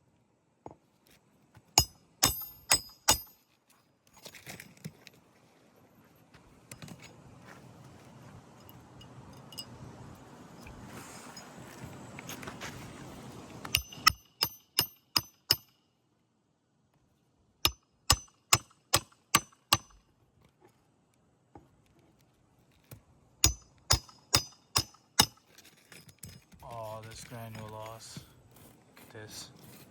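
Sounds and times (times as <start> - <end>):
hammer driving nails: 1.8 - 3.4, 13.7 - 15.7, 17.7 - 20.0, 23.4 - 25.4.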